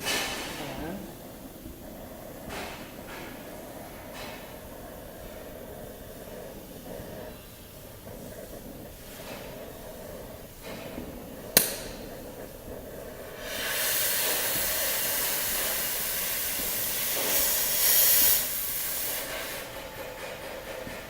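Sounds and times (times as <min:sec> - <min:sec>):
cutting torch flame hissing: 0:00.0 - 0:19.9
oxygen jet hissing through metal: 0:11.2 - 0:19.8.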